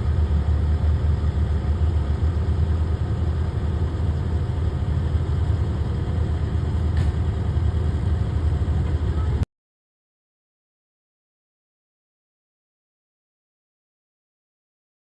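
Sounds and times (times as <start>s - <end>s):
engine idling: 0.0s - 9.4s.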